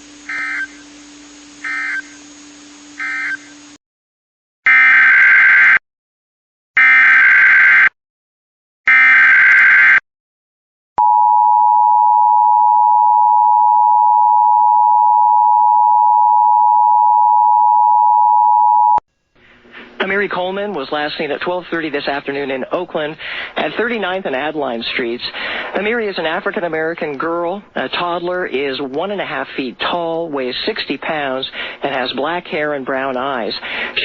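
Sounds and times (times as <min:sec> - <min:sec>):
data bursts: 0:00.0 - 0:03.8
two-tone attention signal: 0:03.0 - 0:03.6.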